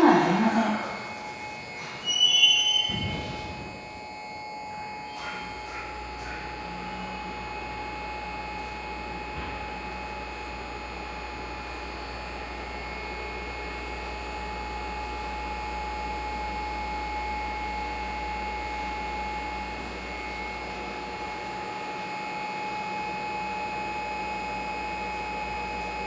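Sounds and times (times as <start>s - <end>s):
steady high-pitched tone: 0.0s - 13.5s.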